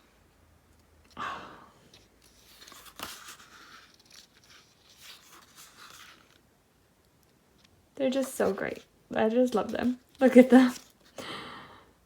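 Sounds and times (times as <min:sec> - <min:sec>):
book pages turning: 0:01.9 - 0:06.4, 0:07.6 - 0:08.9
paper rustling: 0:01.9 - 0:06.4, 0:08.1 - 0:11.2.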